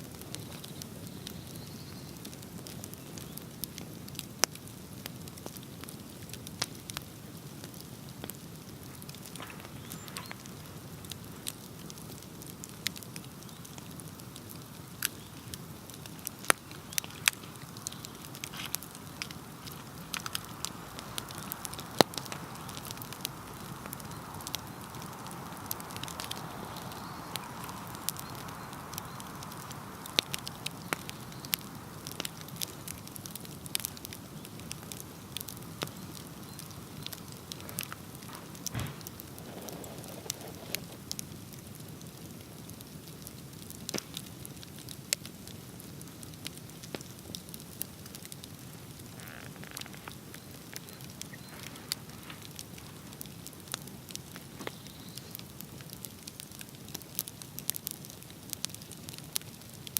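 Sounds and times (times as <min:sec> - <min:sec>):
bonfire crackling: 0:00.0 - 0:59.9
low rush of flames: 0:00.0 - 0:59.9
soft hiss: 0:06.2 - 0:47.3.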